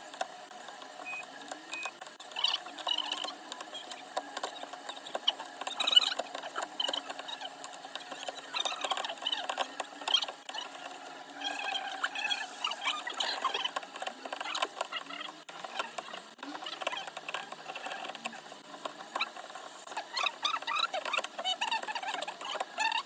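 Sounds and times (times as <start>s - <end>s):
small tools clicking and scratching: 0.0s - 23.0s.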